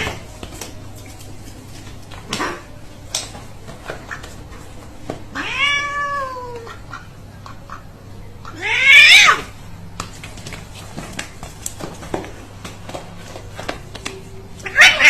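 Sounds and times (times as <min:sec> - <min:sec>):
cat meowing: 0:05.3 - 0:06.8, 0:08.5 - 0:09.5, 0:14.6 - 0:15.0.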